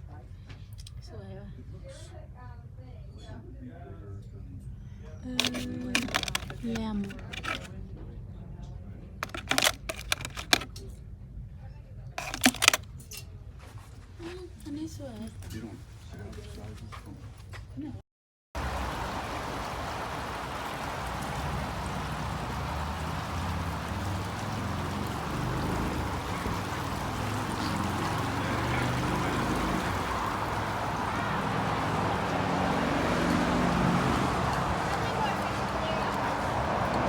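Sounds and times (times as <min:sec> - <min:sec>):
flowing water rushing: 0:18.6 - 0:37.0.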